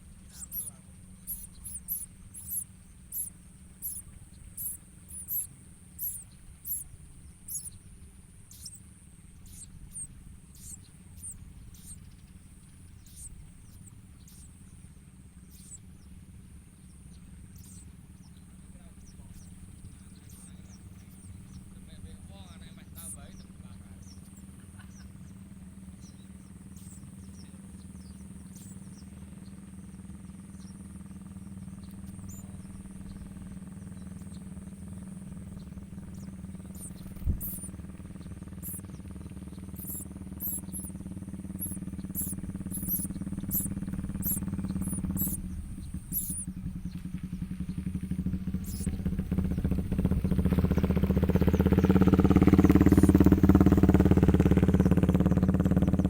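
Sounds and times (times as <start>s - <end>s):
motorcycle engine approaching: 0.0s - 56.0s
high bird chirps: 0.2s - 6.9s, 7.5s - 7.8s, 8.5s - 8.8s, 9.4s - 14.6s, 17.6s - 29.1s, 31.4s - 47.0s, 48.5s - 49.5s, 51.7s - 53.4s.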